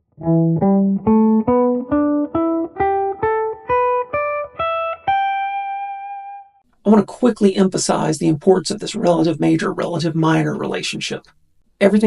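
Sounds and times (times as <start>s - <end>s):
guitar plucking scale notes: 0.0s - 6.6s.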